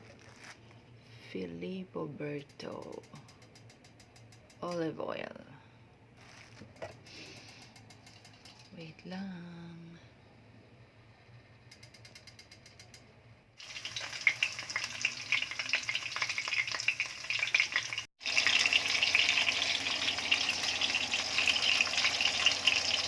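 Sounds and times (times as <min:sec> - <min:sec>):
fish sizzling in oil: 0:13.6 - 0:23.0.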